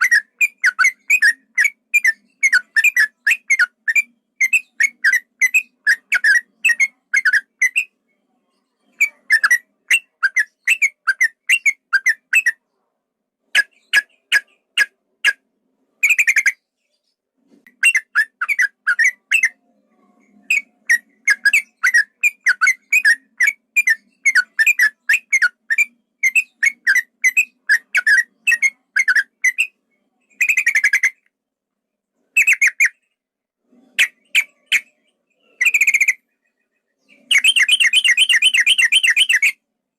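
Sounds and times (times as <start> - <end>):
bird whistling short notes: 37.3 - 39.5
harsh scratchy bird notes: 37.3 - 39.5.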